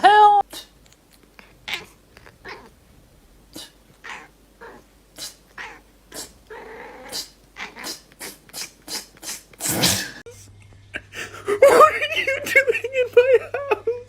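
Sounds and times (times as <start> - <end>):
pet animal drawn-out call: 4.0 - 9.4.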